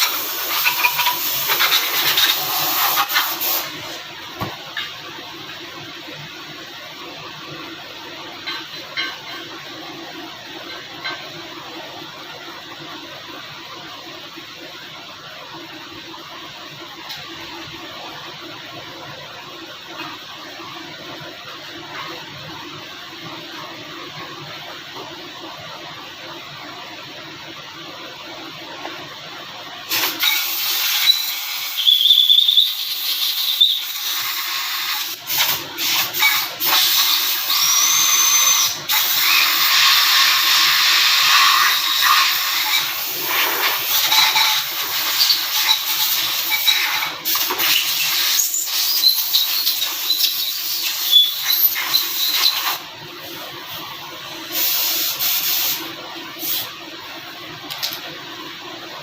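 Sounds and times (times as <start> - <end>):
power tool hissing and squealing: 29.9 - 52.8.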